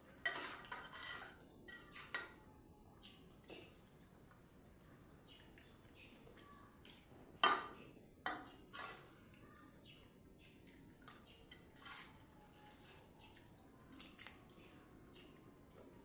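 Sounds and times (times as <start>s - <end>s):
spoon clinking against a dish: 0.2s - 4.0s, 5.3s - 9.5s, 10.6s - 15.3s.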